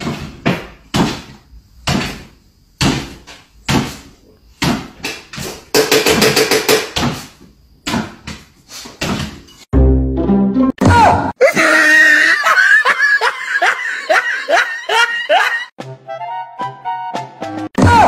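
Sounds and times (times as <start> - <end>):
sharp knocks: 0.0 - 9.5.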